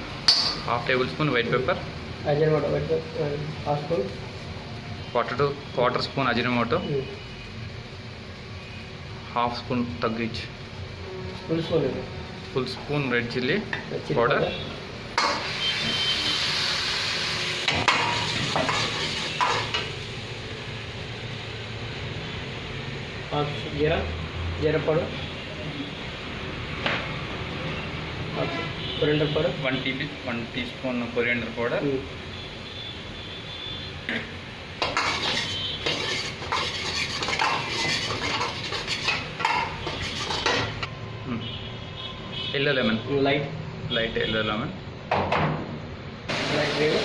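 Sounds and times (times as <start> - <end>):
oil sizzling in a pan: 0.0 - 24.4, 30.8 - 40.9, 46.3 - 47.0
utensil knocking and scraping pan: 34.8 - 40.8.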